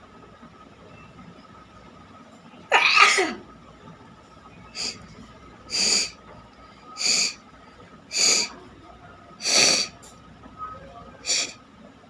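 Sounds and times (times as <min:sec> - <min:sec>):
sharp breaths through nose: 0:09.4 - 0:09.9.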